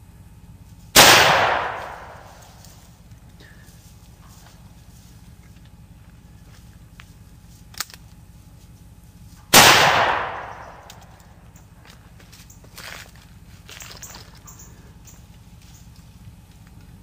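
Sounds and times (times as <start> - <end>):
revolver gunshot with echo: 1.0 - 2.4, 9.5 - 10.9.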